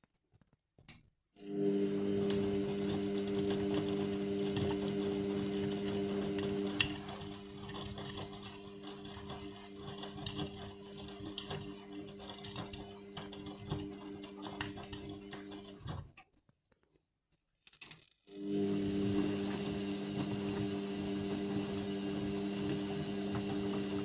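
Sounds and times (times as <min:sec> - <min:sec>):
washing machine motor humming: 0:01.4 - 0:16.1, 0:18.3 - 0:24.0
small clicks and ticks: 0:17.6 - 0:18.3.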